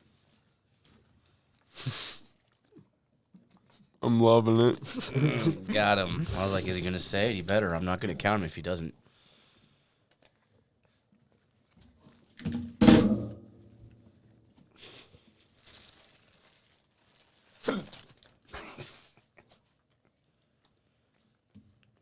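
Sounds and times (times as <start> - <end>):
loud thump: 12.8 - 13.5.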